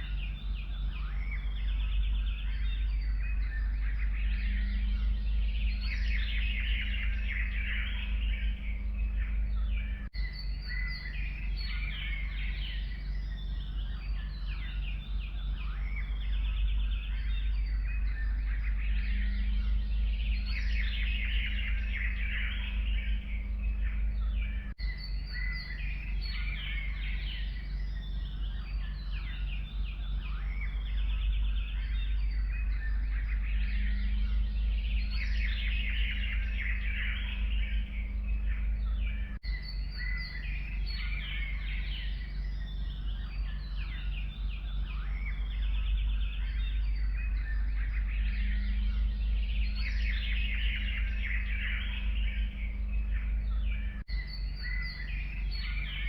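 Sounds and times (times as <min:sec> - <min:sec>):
songbirds chirping and trilling: 0:00.0 - 0:56.0
steady low rumble: 0:00.0 - 0:56.0.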